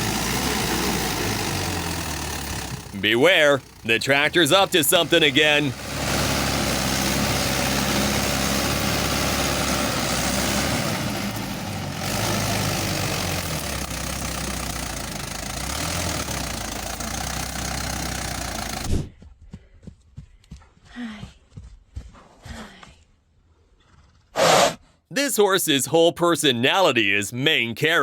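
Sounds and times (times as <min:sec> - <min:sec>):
tractor engine running: 0:00.0 - 0:19.8.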